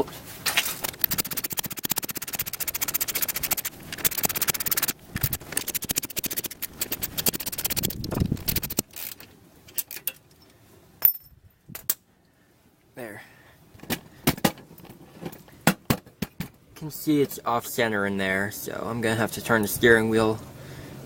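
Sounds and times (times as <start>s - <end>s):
ratchet wrench clicking: 0.7s - 9.2s.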